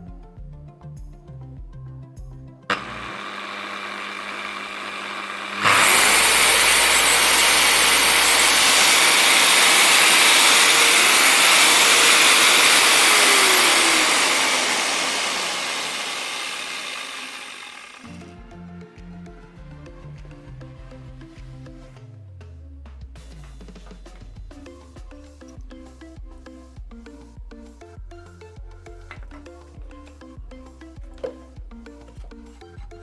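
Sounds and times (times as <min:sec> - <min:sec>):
rotary polisher whirring: 0:02.7 - 0:18.7, 0:28.9 - 0:30.1.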